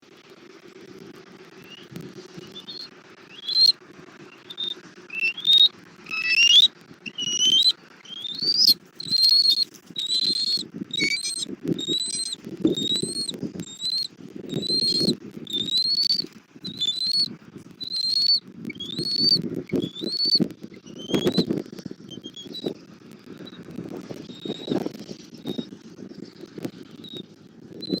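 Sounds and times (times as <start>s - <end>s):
wing flapping: 0.3s - 28.0s
eagle whistled chirps: 1.6s - 22.8s, 24.2s - 24.8s, 27.0s - 27.2s, 27.8s - 28.0s.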